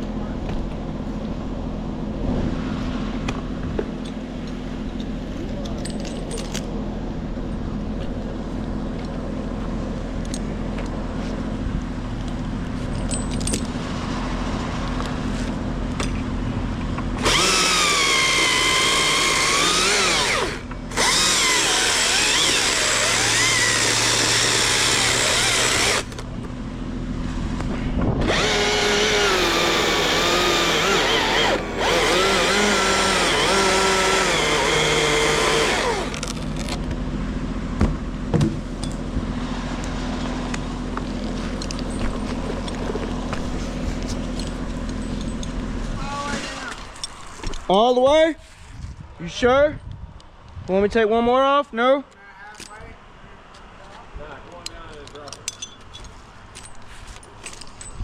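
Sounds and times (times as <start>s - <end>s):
chainsaw cutting wood: 17.1s - 26.3s, 28.2s - 36.8s.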